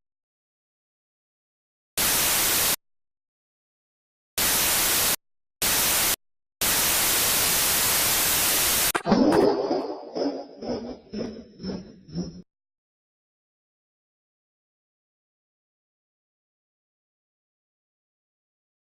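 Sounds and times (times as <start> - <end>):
white-noise static bursts: 2.0 - 2.8, 4.4 - 9.0.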